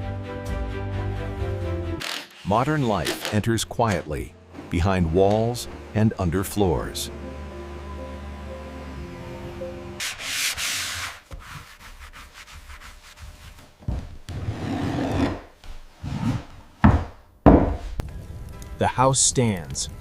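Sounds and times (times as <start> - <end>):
sanding strokes: 10.0 - 13.7.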